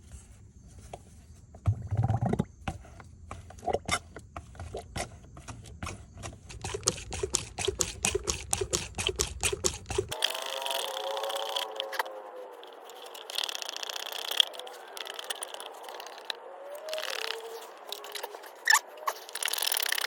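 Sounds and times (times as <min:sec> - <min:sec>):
hand pump squeaky clicks: 0:04.7 - 0:20.0.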